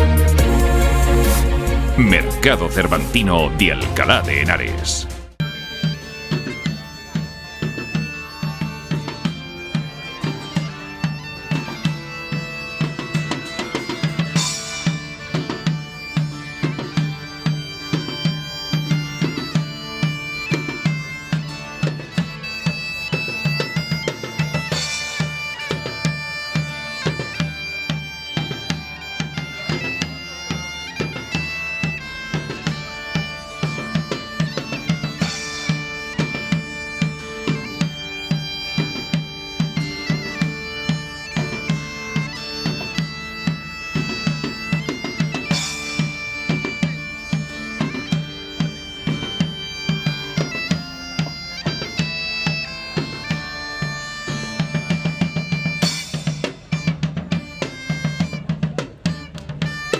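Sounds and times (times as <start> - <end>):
bagpipe tune with drone: 0.0 - 59.9
drums beating: 1.7 - 5.6.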